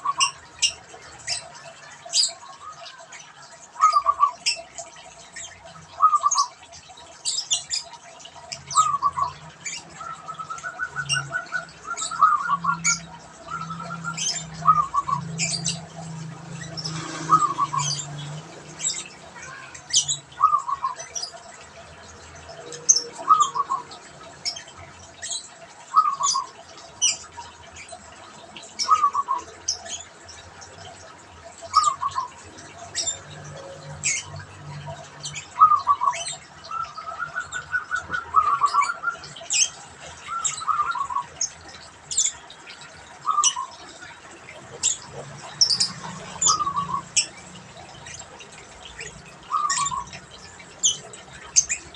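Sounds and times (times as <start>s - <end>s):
small birds chirping: 0.0s - 51.9s
dove cooing: 22.9s - 23.8s, 36.7s - 39.4s.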